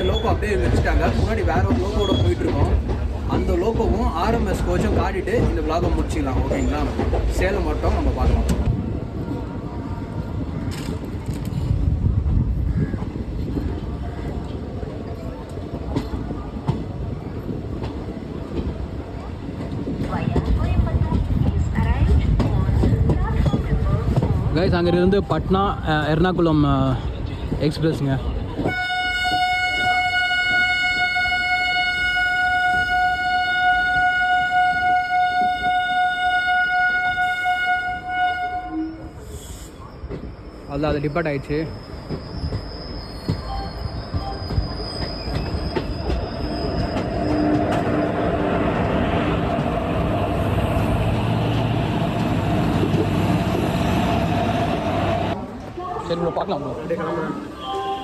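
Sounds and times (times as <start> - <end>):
train rumbling on rails: 0.0 - 58.0
locomotive horn long note: 28.7 - 39.2.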